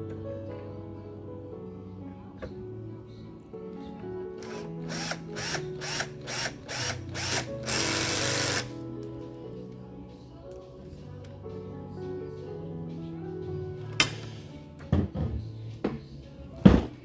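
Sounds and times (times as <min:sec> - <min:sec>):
small electric motor whirring: 0:04.4 - 0:08.7.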